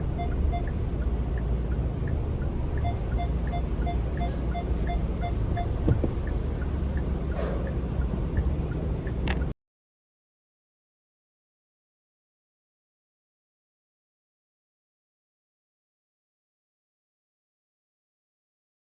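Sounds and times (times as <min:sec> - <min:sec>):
parking warning beeping: 0:00.0 - 0:08.6
car engine and cabin rumble: 0:00.0 - 0:09.6.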